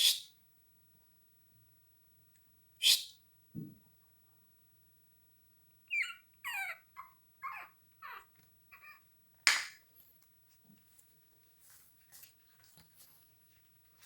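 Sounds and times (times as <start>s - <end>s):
puppies whining and yelping: 5.9s - 9.1s.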